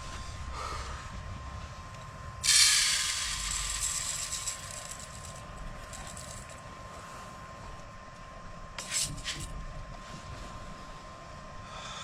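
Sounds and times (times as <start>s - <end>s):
rice rattling into a pot: 2.4s - 6.5s.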